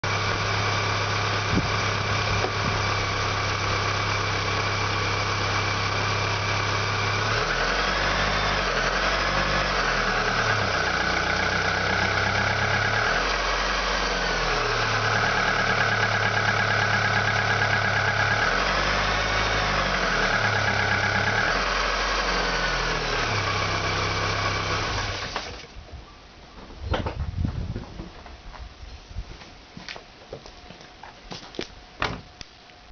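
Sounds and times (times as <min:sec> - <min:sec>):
car engine idling and revving: 0:00.0 - 0:25.7.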